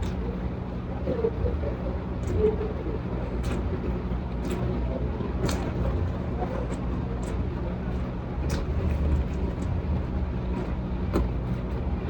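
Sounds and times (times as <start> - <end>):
steady low hum: 0.0 - 12.0
person chewing wetly: 3.3 - 7.6, 8.4 - 10.0.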